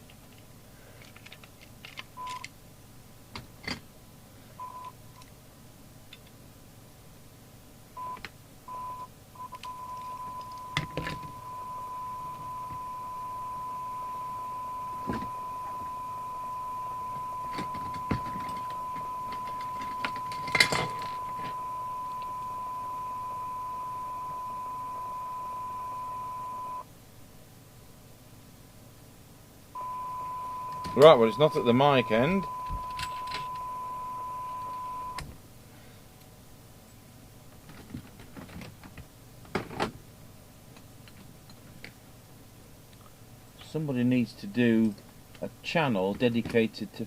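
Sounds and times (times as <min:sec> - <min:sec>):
steady audio test tone: 0:08.0 - 0:26.9, 0:29.7 - 0:35.2
handling clicks and knocks: 0:17.1 - 0:22.3.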